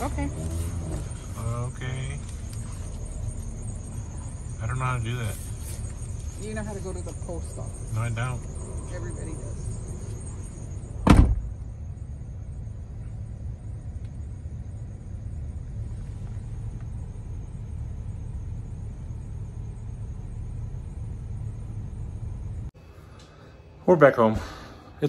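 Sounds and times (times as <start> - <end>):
car cabin road rumble: 0.0 - 22.7
loud thump: 11.0 - 11.6.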